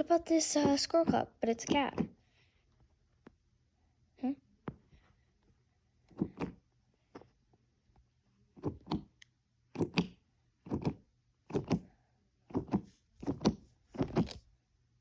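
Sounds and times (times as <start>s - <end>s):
plastic toy knocking: 0.5s - 2.2s, 6.1s - 6.6s, 8.6s - 9.2s, 9.8s - 11.9s, 12.5s - 14.4s.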